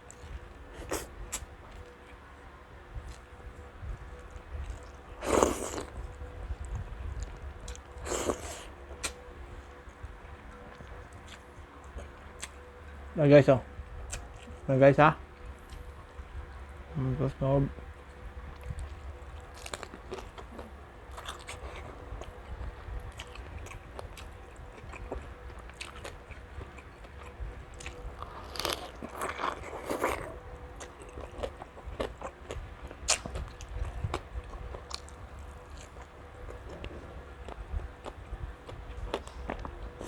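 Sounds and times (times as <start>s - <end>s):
person chewing crunchy food: 0.0s - 2.2s, 4.2s - 9.2s, 18.0s - 40.0s.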